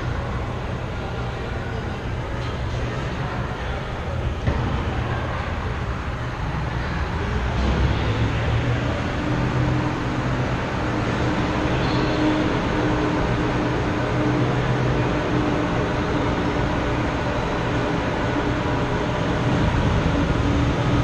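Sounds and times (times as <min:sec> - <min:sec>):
arena noise low drone: 0:00.0 - 0:21.0
faint higher tone: 0:11.8 - 0:12.4.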